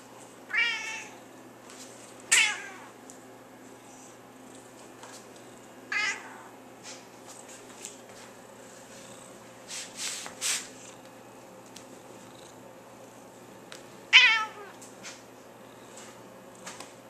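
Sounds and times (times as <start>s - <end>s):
cat meowing: 0.5s - 1.2s, 2.3s - 2.9s, 5.9s - 6.5s, 14.1s - 14.8s.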